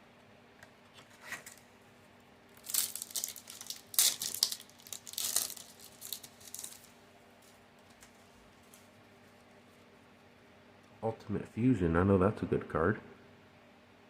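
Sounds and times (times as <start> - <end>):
foil wrapper crinkling and tearing: 2.5 - 8.9.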